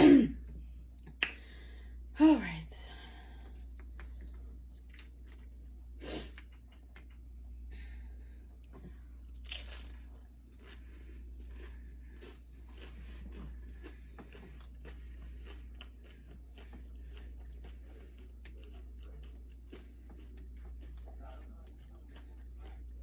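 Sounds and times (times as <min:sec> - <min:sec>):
chips being crunched and chewed: 0:09.3 - 0:10.8, 0:11.4 - 0:13.5.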